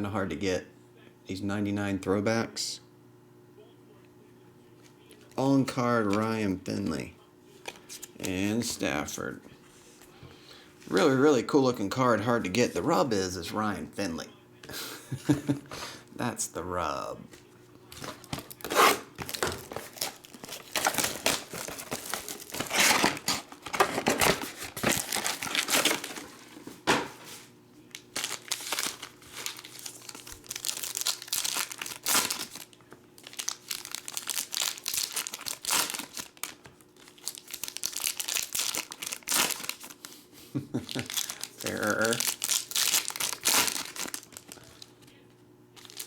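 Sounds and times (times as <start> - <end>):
foil wrappers crinkling and tearing: 17.9 - 45.2, 45.8 - 46.0.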